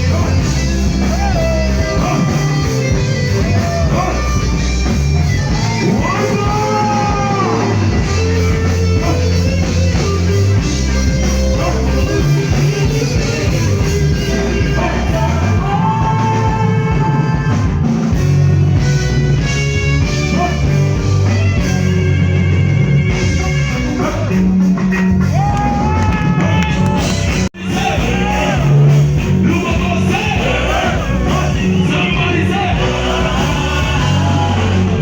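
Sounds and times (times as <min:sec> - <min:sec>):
band playing through pa: 0:00.0 - 0:35.0
person singing: 0:27.6 - 0:35.0.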